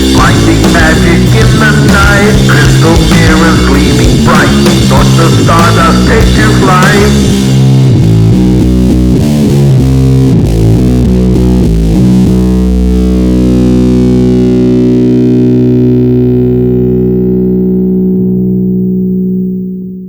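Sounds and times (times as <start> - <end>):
drums: 0.0 - 12.6
distorted guitar and bass riff: 0.0 - 20.0.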